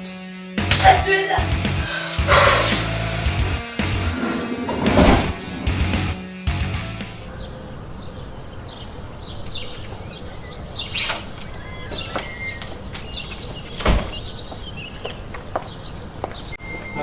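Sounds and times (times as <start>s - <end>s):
outdoor background noise: 4.0s - 17.0s
small birds chirping: 6.2s - 17.0s.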